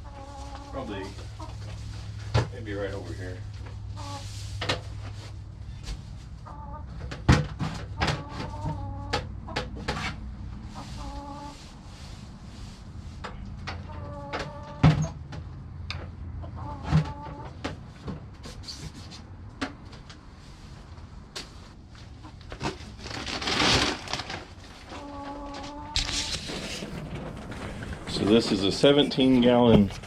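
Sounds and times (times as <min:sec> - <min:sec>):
chickens clucking: 0:00.0 - 0:02.3, 0:03.5 - 0:12.2, 0:13.2 - 0:18.0, 0:24.6 - 0:30.0.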